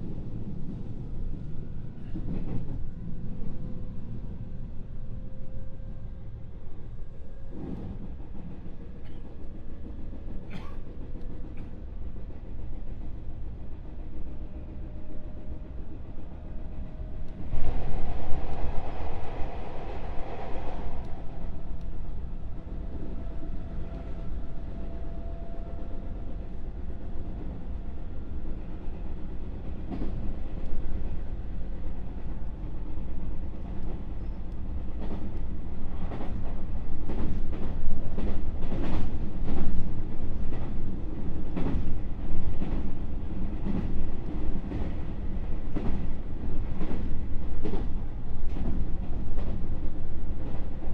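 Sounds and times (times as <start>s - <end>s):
train running noise inside car: 0.0s - 50.9s
rush of noise: 17.4s - 22.4s.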